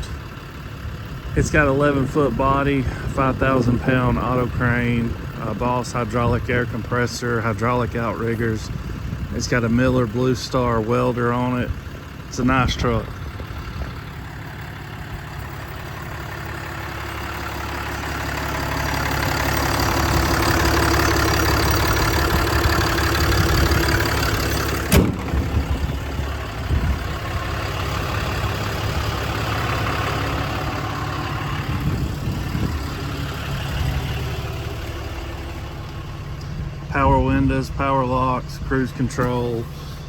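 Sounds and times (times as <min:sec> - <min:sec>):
diesel engine idling: 0:00.0 - 0:40.0.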